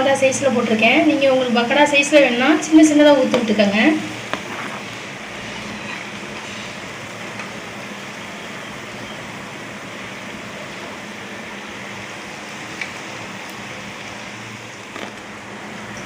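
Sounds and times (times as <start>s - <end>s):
batter deep-frying in oil: 0.0s - 16.0s.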